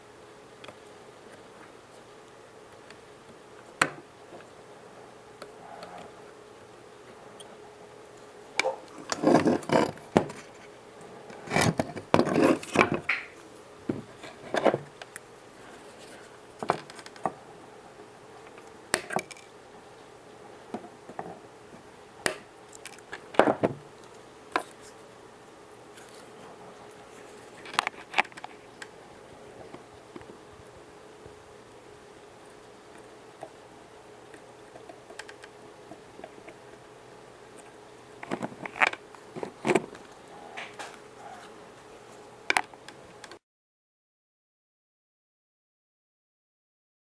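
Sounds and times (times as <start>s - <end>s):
faint steady hum: 0.0s - 43.4s.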